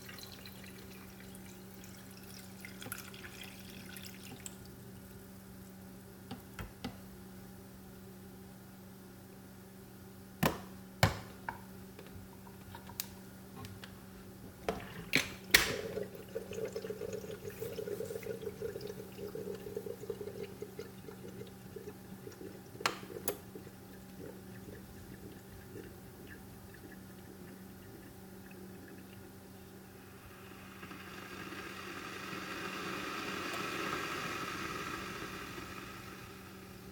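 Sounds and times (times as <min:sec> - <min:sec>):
liquid pouring into cup: 0:00.0 - 0:05.2, 0:14.6 - 0:36.4
low steady hum: 0:00.0 - 0:36.9.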